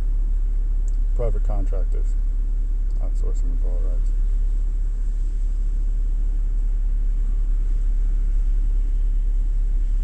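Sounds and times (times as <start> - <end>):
steady low rumble: 0.0 - 10.0.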